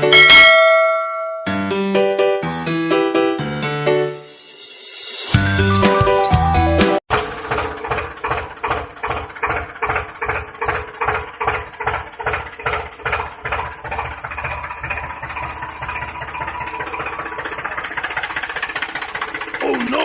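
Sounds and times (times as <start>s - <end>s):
tractor engine chugging: 7.1s - 20.0s.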